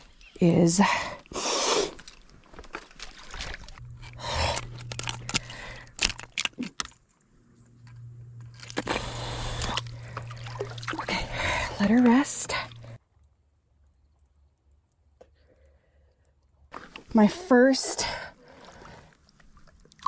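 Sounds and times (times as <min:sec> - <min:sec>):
steady low hum: 0:03.3 - 0:13.0.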